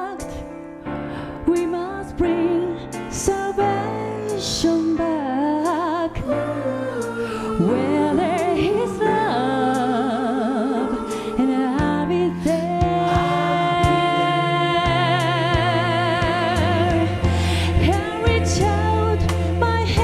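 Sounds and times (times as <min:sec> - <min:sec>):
person singing with vibrato: 0:01.5 - 0:20.0
steady bass notes: 0:11.4 - 0:20.0.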